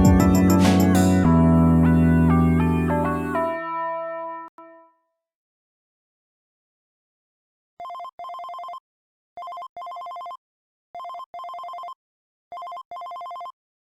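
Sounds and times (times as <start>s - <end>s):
warbling phone ringtone: 7.8s - 8.8s, 9.4s - 10.4s, 11.0s - 13.6s.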